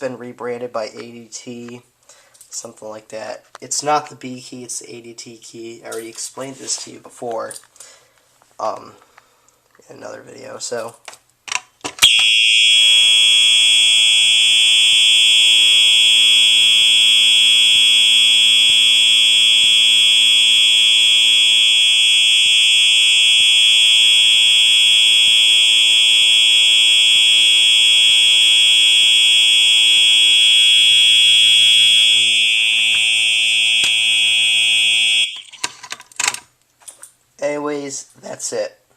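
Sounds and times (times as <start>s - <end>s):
fire alarm horn tone: 12.0s - 35.5s.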